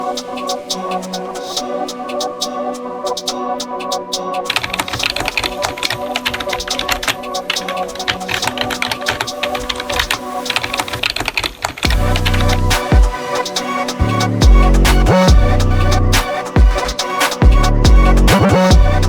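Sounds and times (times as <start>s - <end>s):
background music sustained tones: 0.0s - 19.0s
rapid dense clicking: 4.4s - 15.4s.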